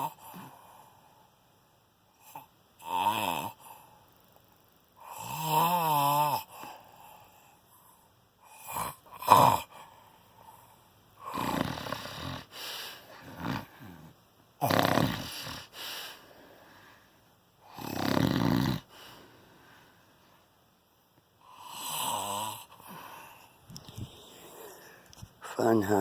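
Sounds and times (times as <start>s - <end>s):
person snoring: 2.2s - 3.9s, 5.0s - 7.4s, 8.4s - 9.9s, 11.2s - 16.2s, 17.6s - 19.2s, 21.4s - 25.1s.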